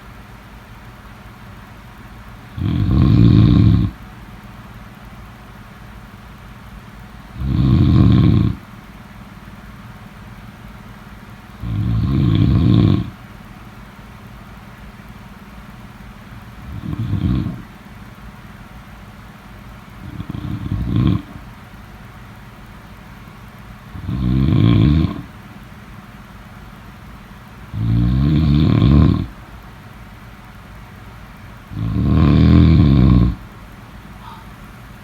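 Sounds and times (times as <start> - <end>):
faint low hum: 0.0 - 35.0
person snoring: 2.5 - 4.0, 7.4 - 8.6, 11.6 - 13.2, 16.6 - 17.7, 20.0 - 21.4, 23.9 - 25.3, 27.7 - 29.3, 31.7 - 33.4.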